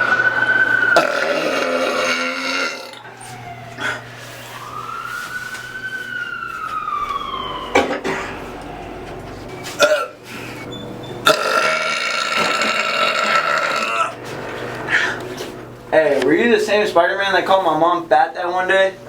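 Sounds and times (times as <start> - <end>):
man burping: 1.0 - 3.0, 9.8 - 10.2, 11.2 - 14.1.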